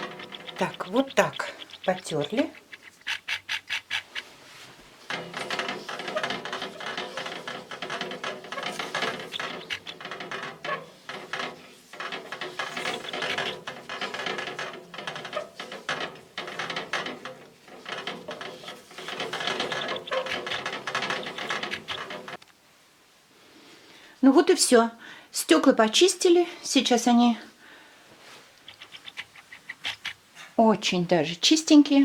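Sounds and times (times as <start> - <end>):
scrubbing glass by hand: 0.0 - 22.4.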